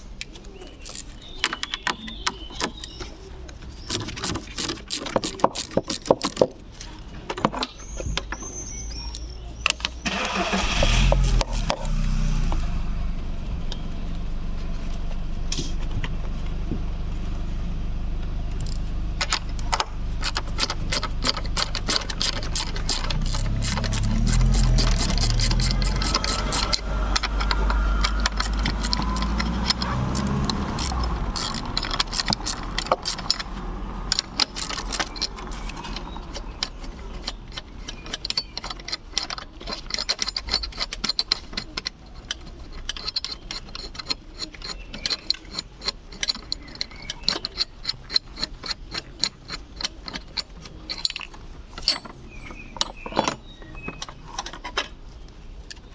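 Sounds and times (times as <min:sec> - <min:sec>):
metal tools clicking and rattling: 0:00.2 - 0:10.0, 0:18.6 - 0:55.0
steady low rumble: 0:10.9 - 0:35.8.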